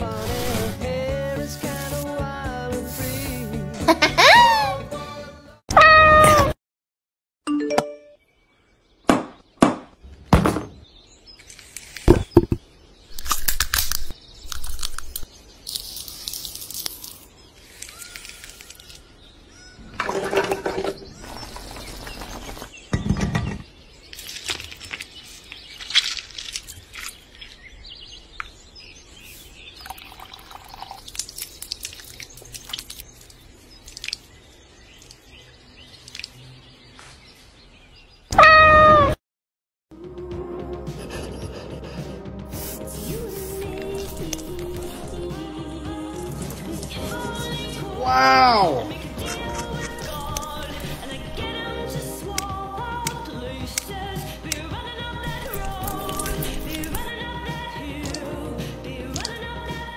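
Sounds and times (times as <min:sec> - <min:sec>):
hissing and pouring: 0:00.0 - 0:00.9, 0:29.4 - 0:34.3, 0:55.3 - 0:57.1.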